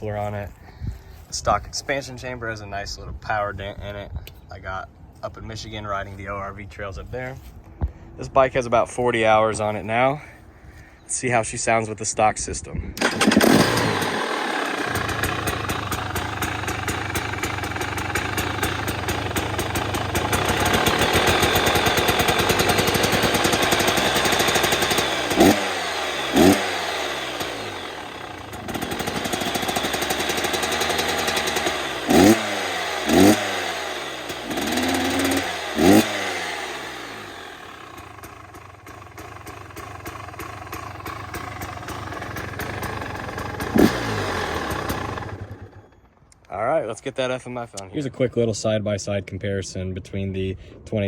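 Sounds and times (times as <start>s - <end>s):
two-stroke dirt bike engine revving: 13.0s - 46.2s.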